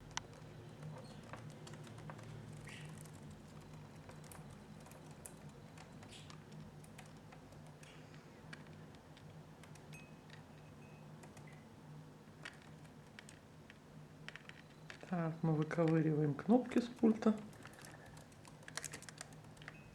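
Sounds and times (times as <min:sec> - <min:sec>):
low room hum: 0:00.0 - 0:19.9
bird claws and beaks tapping: 0:00.1 - 0:10.4, 0:17.5 - 0:19.8.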